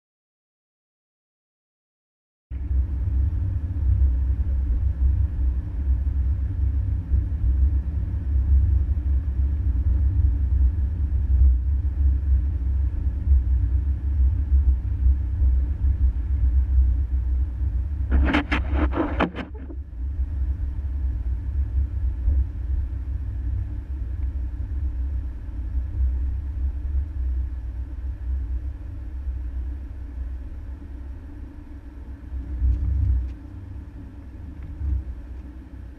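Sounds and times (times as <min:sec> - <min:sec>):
brief harsh sound: 0:18.1 - 0:19.8.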